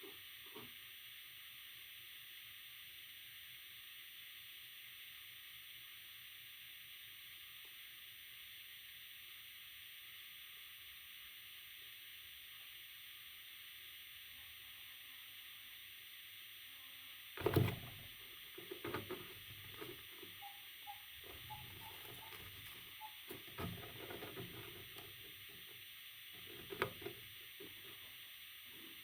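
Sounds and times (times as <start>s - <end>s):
background hiss: 0.0s - 29.0s
chicks rustling in bedding: 17.4s - 25.8s
faint short peeps: 20.3s - 23.2s.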